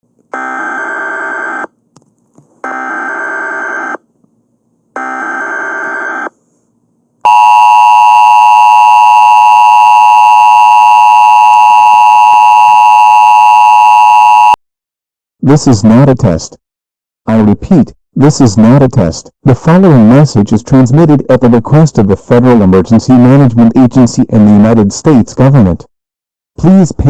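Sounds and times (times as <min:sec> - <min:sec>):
two-tone attention signal: 0:07.3 - 0:14.6.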